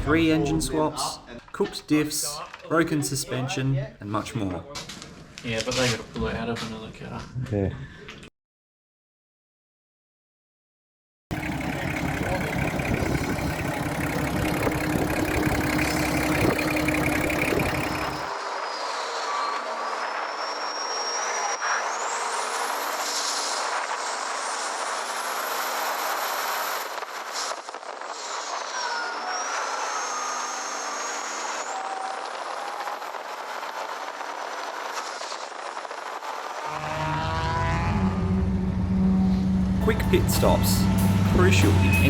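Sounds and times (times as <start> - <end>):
loud vehicle engine: 11.3 - 18.3, 36.6 - 42.0
high gliding whines: 11.3 - 22.8, 34.9 - 42.0.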